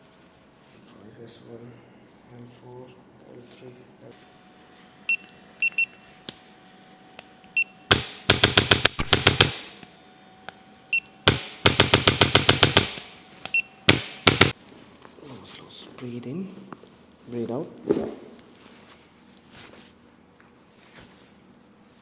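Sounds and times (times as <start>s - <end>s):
short high beeps: 5.1s - 6.0s
rapid sharp clicking: 13.9s - 14.6s.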